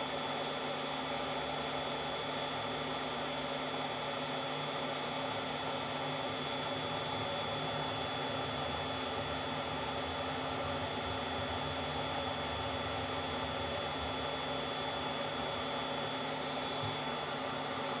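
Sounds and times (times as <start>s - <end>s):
hot air blower hissing: 0.0s - 18.0s.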